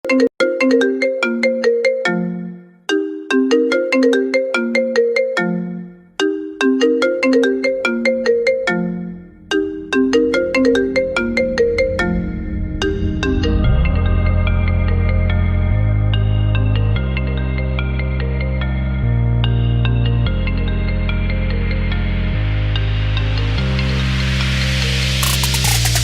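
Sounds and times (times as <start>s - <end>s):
phone ringtone melody: 0.1s - 12.4s, 25.2s - 26.0s
deep bass rumble: 10.2s - 17.9s.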